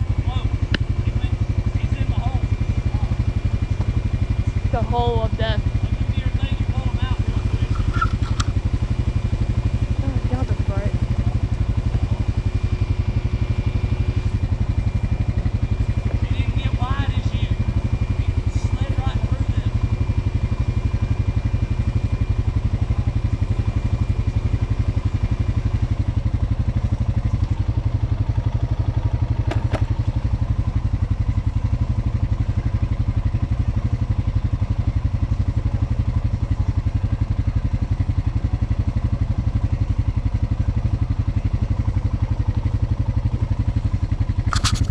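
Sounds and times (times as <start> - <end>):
vehicle engine running: 0.0 - 44.9
sharp click: 7.7 - 8.6, 44.5 - 44.9.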